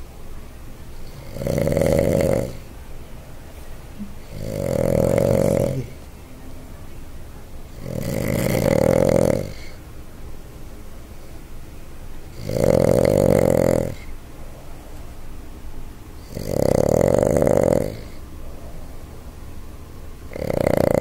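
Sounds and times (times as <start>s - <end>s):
dog snoring: 1.0s - 2.7s, 4.2s - 6.0s, 7.7s - 9.8s, 12.3s - 14.1s, 16.2s - 18.2s, 20.3s - 21.0s.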